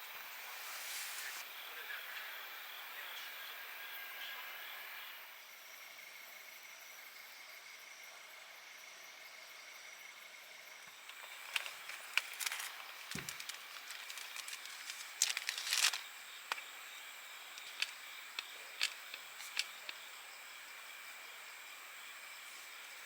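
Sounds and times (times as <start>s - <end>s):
high insect buzz: 0.2s - 1.4s, 5.7s - 23.0s
crackling rustling clicks: 11.1s - 16.8s, 17.4s - 20.1s.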